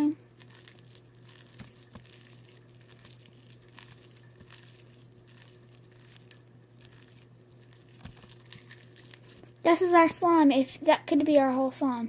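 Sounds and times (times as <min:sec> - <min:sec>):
steady low hum: 0:00.0 - 0:12.0
slime crinkling and tearing: 0:00.1 - 0:09.7.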